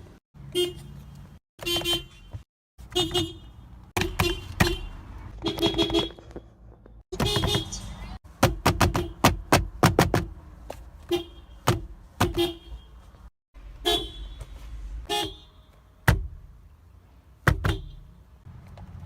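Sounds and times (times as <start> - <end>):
car horn toots: 1.6 - 6.4, 7.1 - 7.8, 11.1 - 13.0, 13.8 - 15.8.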